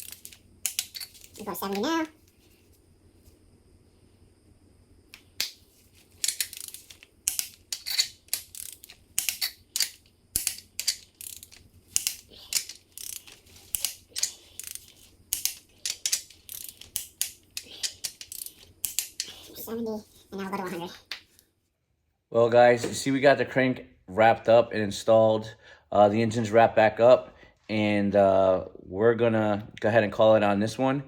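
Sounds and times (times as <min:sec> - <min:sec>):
torque wrench ratcheting: 0:06.2 - 0:19.4.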